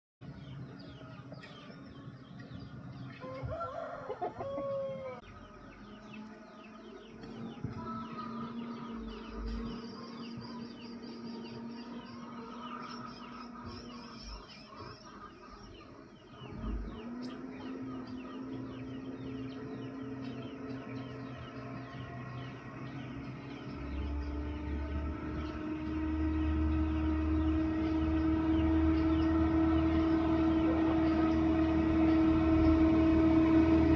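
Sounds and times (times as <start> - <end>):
low engine hum: 0.2 - 33.9
rooster crowing: 3.1 - 5.3.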